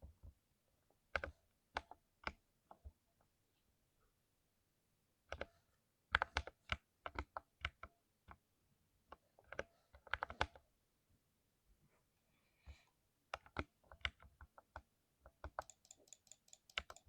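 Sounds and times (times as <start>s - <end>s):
keyboard keystroke clicks: 15.4s - 17.0s.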